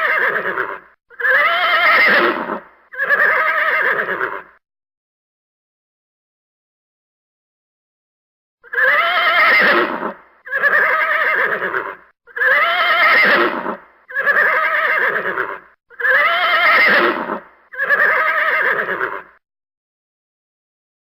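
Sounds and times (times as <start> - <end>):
horse whinnying: 0.0 - 4.6, 8.6 - 19.4.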